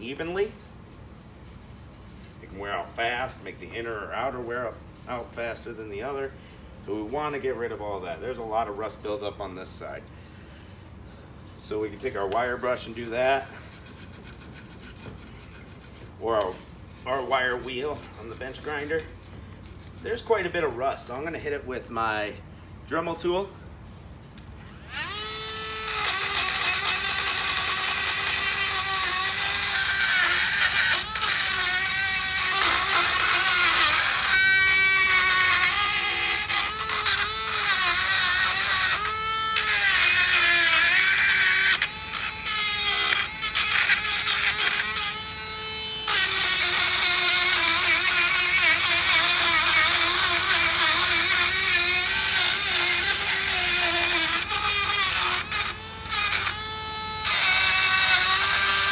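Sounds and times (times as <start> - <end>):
rotary tool whining: 11.6 - 20.6, 24.3 - 58.9.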